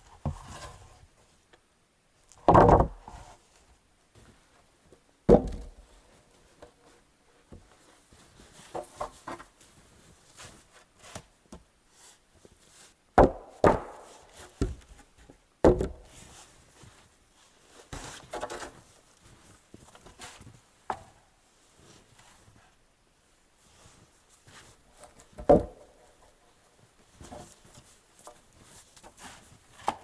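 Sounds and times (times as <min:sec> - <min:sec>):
knocks on wood: 0:02.5 - 0:03.0, 0:13.2 - 0:14.8, 0:15.6 - 0:16.0.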